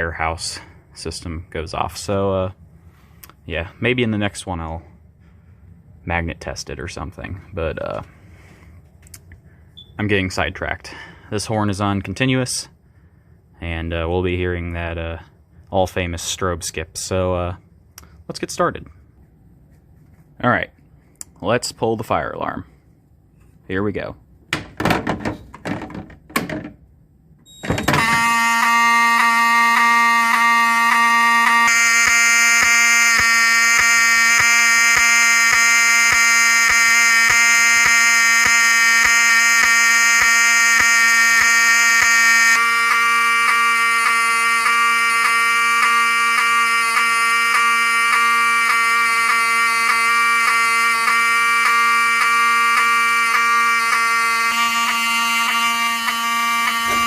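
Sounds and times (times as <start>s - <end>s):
alarm horn buzzing: 27.5s - 57.0s.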